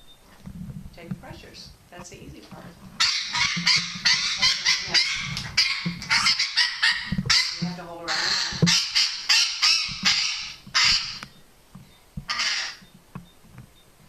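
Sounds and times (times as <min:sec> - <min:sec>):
parrot squawking harshly: 0:03.0 - 0:11.3, 0:12.3 - 0:12.8.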